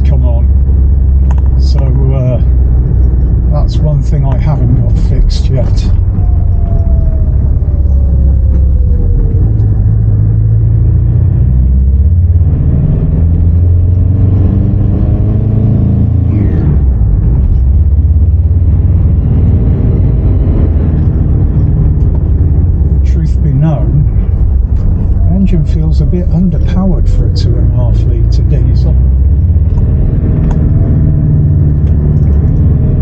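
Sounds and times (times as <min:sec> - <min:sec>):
diesel engine rumbling: 0:00.0 - 0:33.0.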